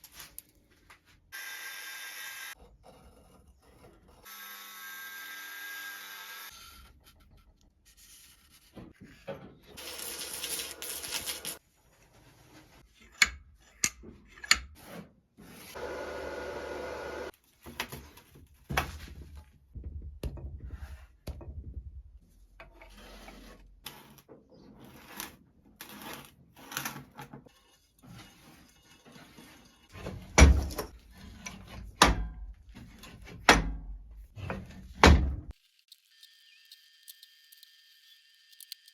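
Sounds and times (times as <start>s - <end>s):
vise scraping and rubbing: 2.5s - 4.3s, 6.5s - 15.8s, 22.2s - 33.5s.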